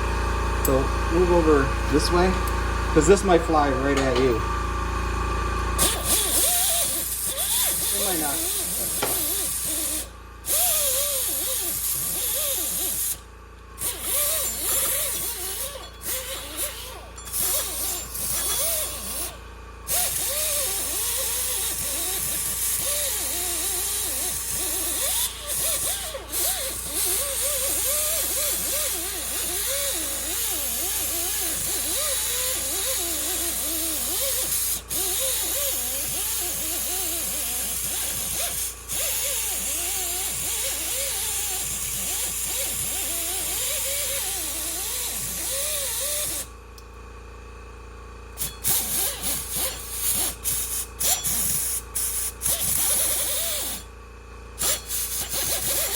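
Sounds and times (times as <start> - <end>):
air tool hissing on metal: 5.8 - 13.2, 13.8 - 46.5, 48.4 - 53.9, 54.6 - 55.9
short bursts of air: 5.8 - 13.2, 13.8 - 46.6, 48.4 - 53.9, 54.6 - 55.9.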